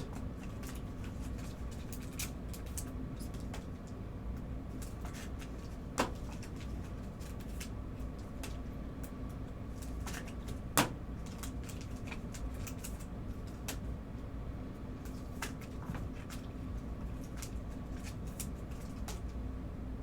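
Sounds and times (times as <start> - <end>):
steady low hum: 0.0 - 20.0
cards handled on a table: 4.8 - 8.6.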